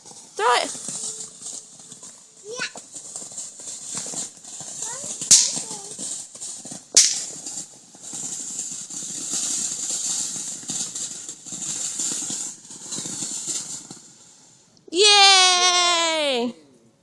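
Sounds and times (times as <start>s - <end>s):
firework sharp snap: 0.0s - 14.4s
firework hissing crackling spray: 0.0s - 16.2s.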